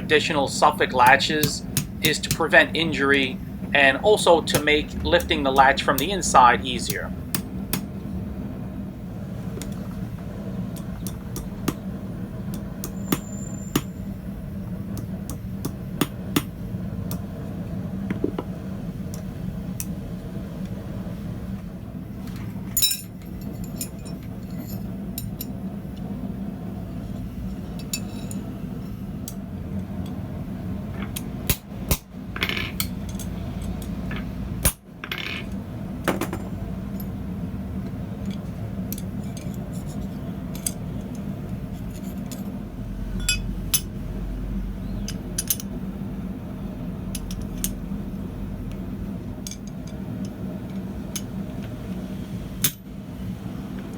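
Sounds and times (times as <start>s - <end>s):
steady low hum: 0.0s - 53.9s
metal tools clinking on iron: 22.7s - 25.5s, 27.8s - 28.5s, 43.2s - 43.9s, 45.0s - 45.7s.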